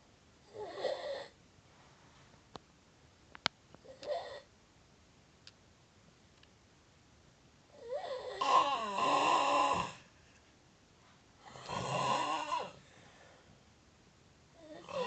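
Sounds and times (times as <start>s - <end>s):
quiet breaths: 0.0s - 2.7s, 7.7s - 15.0s
loud snoring: 7.8s - 10.1s, 11.4s - 12.8s, 14.6s - 15.0s.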